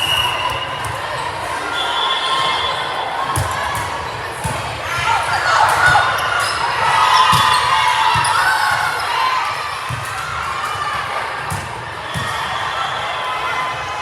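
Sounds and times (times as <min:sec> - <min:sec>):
sneakers squeaking: 0:00.0 - 0:10.3
voices of people: 0:00.0 - 0:14.0.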